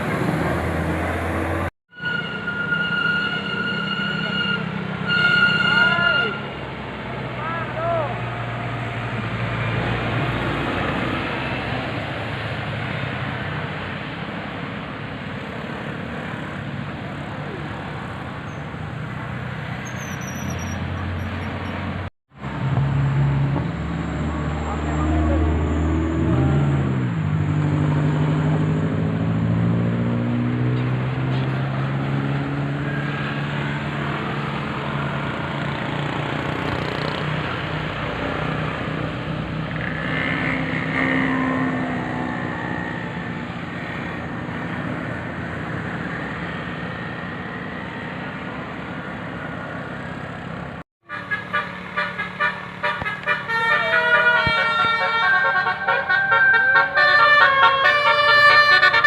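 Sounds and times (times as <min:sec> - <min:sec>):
bus engine passing: 0:00.0 - 0:59.0
road noise: 0:00.0 - 0:59.0
multi-tone horn melody: 0:51.0 - 0:59.0.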